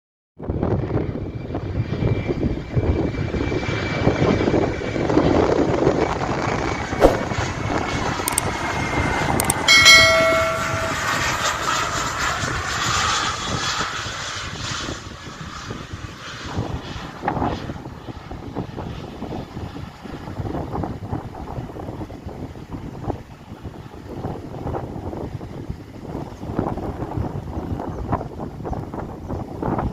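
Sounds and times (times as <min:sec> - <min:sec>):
jet engine rumble and whine: 0:00.4 - 0:29.9
short high-pitched tone: 0:09.4 - 0:12.5.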